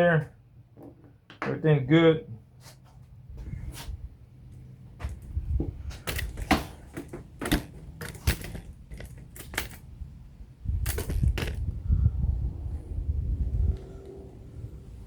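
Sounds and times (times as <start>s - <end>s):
low handling rumble: 3.3s - 15.0s
small parts clicking: 10.8s - 11.6s.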